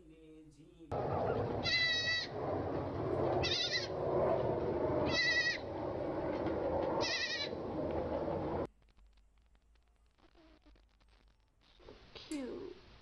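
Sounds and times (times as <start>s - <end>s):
steady background noise: 0.9s - 8.7s
animal bleating: 1.6s - 2.3s, 3.4s - 3.9s, 5.0s - 5.6s, 7.0s - 7.6s.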